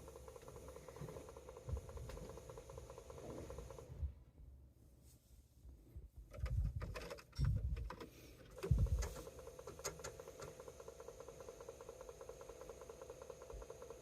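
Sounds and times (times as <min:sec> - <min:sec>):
computer humming: 0:00.0 - 0:04.0, 0:08.6 - 0:14.0
dull thumps and clicks: 0:00.1 - 0:03.8, 0:06.2 - 0:10.6.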